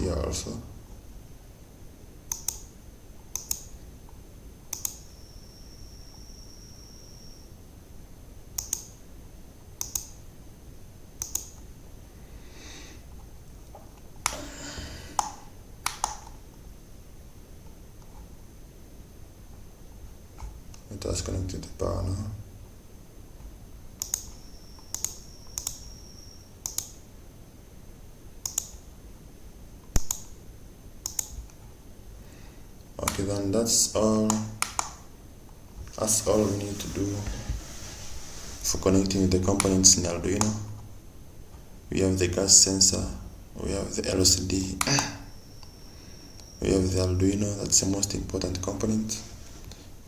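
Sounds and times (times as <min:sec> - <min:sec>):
faint high whine: 0:00.0 - 0:50.0
mouse button clicking: 0:02.3 - 0:02.7, 0:03.3 - 0:03.7, 0:04.7 - 0:05.0, 0:08.6 - 0:08.9, 0:09.8 - 0:10.2, 0:11.2 - 0:11.6, 0:24.0 - 0:25.8, 0:26.6 - 0:27.0, 0:28.4 - 0:28.8.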